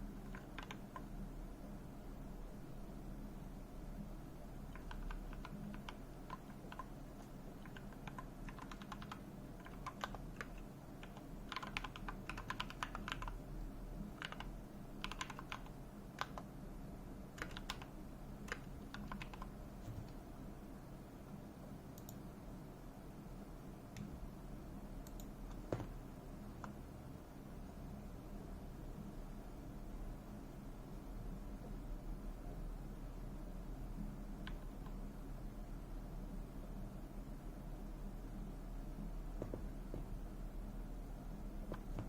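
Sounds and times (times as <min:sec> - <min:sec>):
keyboard typing clicks: 0:00.2 - 0:01.1, 0:04.7 - 0:13.4, 0:14.2 - 0:16.5, 0:17.4 - 0:20.2, 0:21.9 - 0:22.2, 0:25.0 - 0:26.0, 0:34.4 - 0:35.0.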